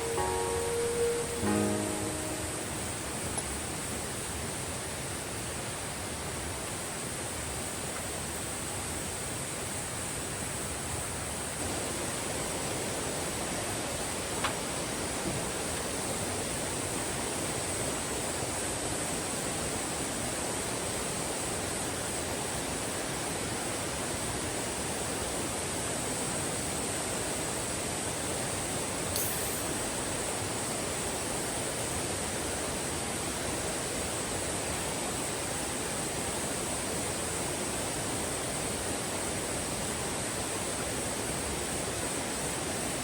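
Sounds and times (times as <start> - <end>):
sharp click: 29.2 - 29.8
high-pitched insect chorus: 29.2 - 30.3.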